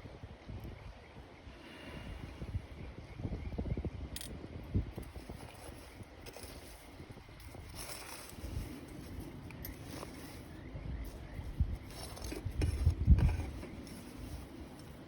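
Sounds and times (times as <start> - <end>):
wind rumble on microphone: 0.0 - 15.0
campfire burning: 4.4 - 15.0
fire crackle: 4.9 - 15.0.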